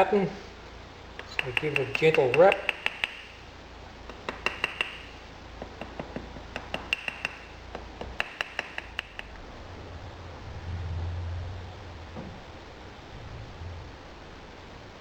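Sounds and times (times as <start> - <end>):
light rapping taps on metal: 1.2 - 9.4.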